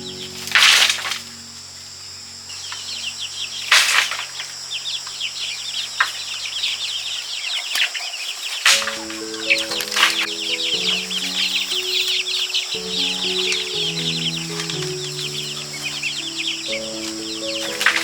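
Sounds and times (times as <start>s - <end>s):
soft background music: 0.0s - 5.0s, 8.7s - 18.0s
chickens cheeping: 0.0s - 18.0s.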